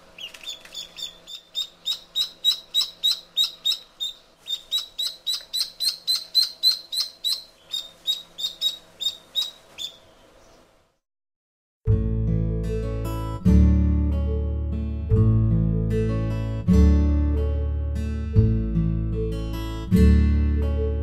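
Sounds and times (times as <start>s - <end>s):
duckling peeping: 0.0s - 10.7s
faint steady hum: 0.0s - 11.0s.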